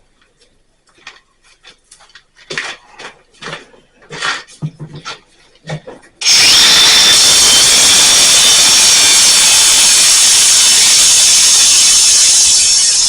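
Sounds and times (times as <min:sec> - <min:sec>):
power tool motor whining: 0:06.2 - 0:13.0.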